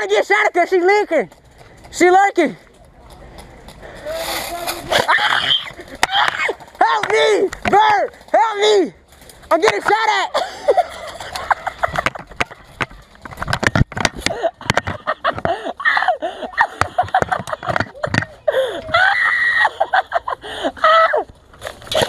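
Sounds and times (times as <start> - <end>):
players yelling and screaming: 4.0 - 8.9.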